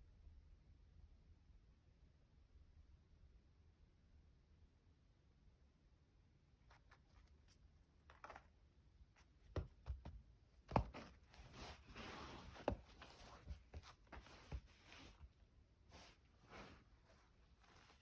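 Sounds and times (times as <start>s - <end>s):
soft rustle: 6.6s - 18.0s
light knocks and taps: 9.4s - 11.4s.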